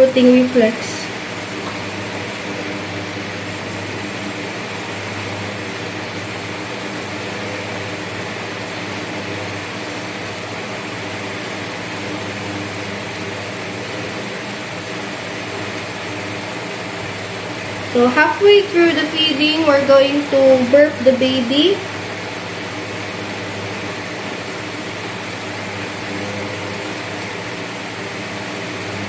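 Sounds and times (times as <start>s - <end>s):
fan whirring: 0.0s - 29.0s
low hum: 17.8s - 22.0s.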